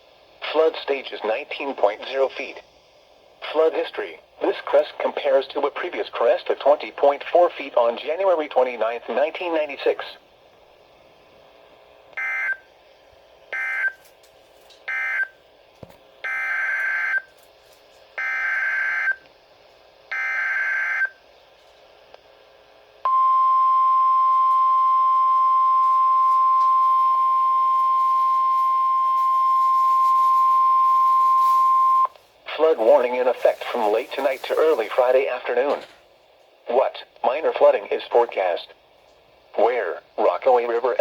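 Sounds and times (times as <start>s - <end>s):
steady alarm tone: 23.1s - 32.1s.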